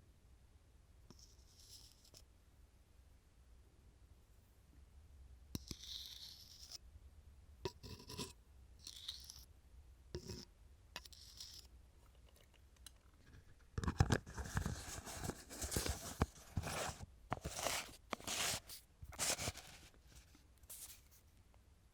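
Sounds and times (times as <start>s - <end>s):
utensil scraping a jar: 5.6s - 6.8s, 7.7s - 9.5s, 10.2s - 19.9s
scraping and clicking handling: 11.0s - 21.1s.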